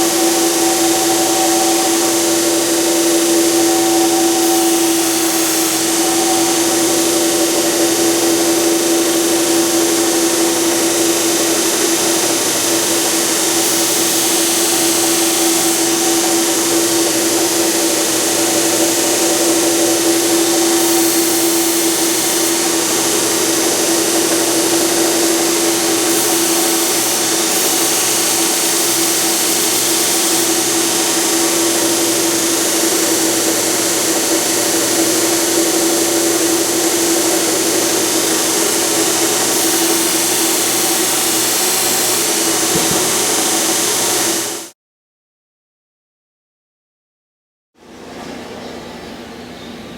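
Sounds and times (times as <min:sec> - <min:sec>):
belt grinder hissing grind: 0:00.0 - 0:44.7.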